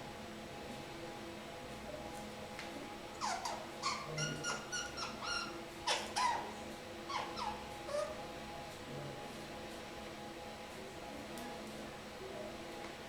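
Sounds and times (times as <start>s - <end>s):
parakeet chattering: 3.2s - 6.5s, 7.1s - 8.1s
parakeet squeaky calls: 3.2s - 6.5s, 7.1s - 8.1s.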